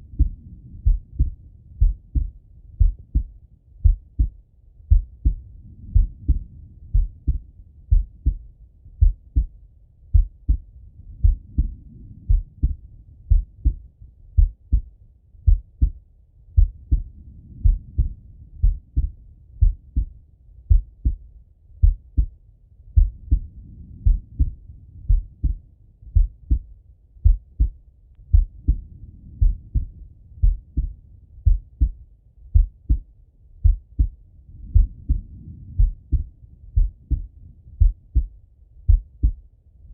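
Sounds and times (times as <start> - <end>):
heartbeat through stethoscope: 0.0 - 39.9.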